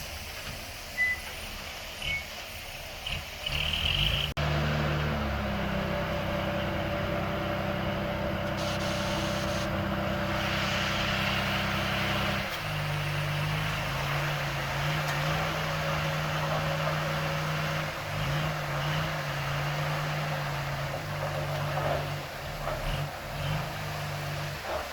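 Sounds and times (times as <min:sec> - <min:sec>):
diesel engine running: 0:00.0 - 0:24.9.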